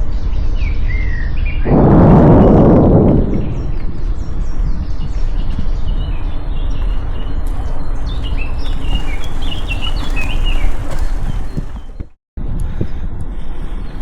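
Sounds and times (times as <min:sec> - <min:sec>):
loud low rumbling noise: 0:01.3 - 0:09.1
songbirds chirping and trilling: 0:03.4 - 0:12.1.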